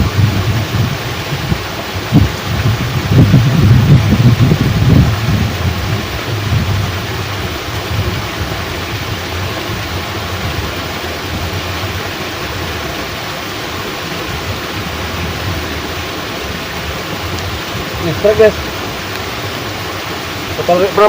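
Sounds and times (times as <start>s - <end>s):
low rumble: 0.0s - 13.0s
heavy rain falling: 0.0s - 21.0s
water rushing through sluice gate: 0.0s - 21.0s.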